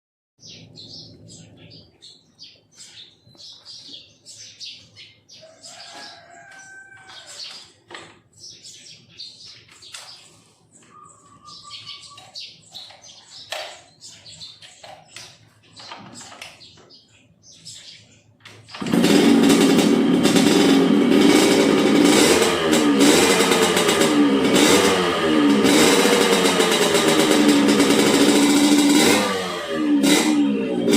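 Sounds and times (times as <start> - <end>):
birds chirping: 0.4 - 30.9
motorcycle engine revving: 18.6 - 30.9.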